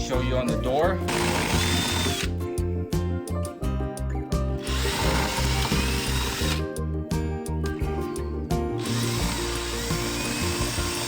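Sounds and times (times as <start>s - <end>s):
background music with steady beat: 0.0s - 11.0s
power drill spinning: 1.0s - 2.4s, 4.6s - 6.6s, 7.8s - 11.0s.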